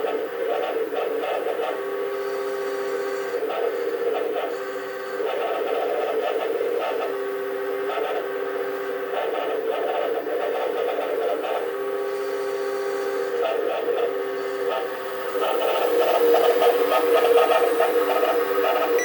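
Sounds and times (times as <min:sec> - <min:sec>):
microwave oven hum: 0:10.8 - 0:19.0.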